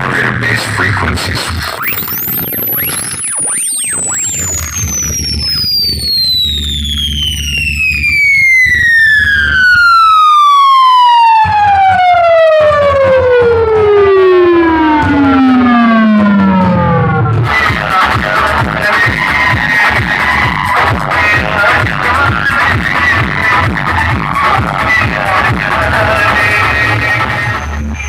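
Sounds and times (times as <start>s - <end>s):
low bass rumble: 0.1s - 28.0s
test tone sweeping downward: 1.8s - 17.5s.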